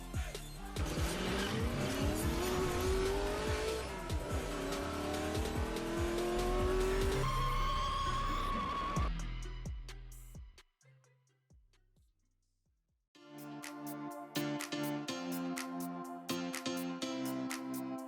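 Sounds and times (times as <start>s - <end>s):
music with steady beat: 0.0s - 10.7s, 13.2s - 18.0s
car engine accelerating: 0.7s - 9.0s.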